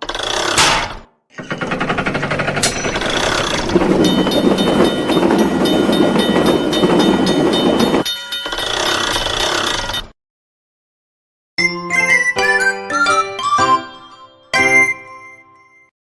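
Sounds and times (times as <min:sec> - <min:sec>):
train clattering past: 0:02.6 - 0:08.1
steady ringing tones: 0:02.6 - 0:08.5.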